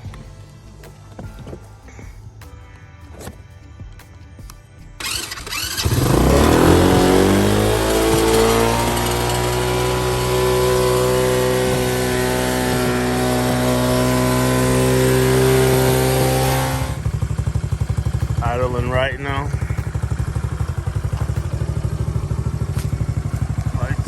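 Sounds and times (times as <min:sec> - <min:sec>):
atv engine idling: 0:05.0 - 0:24.0.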